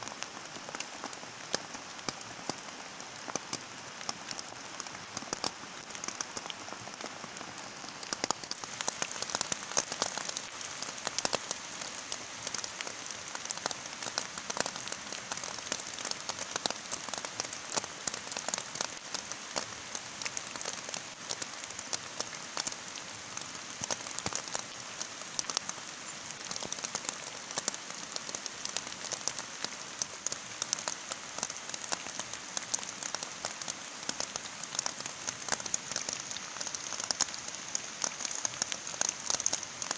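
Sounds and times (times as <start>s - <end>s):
heavy rain pattering: 0.0s - 39.9s.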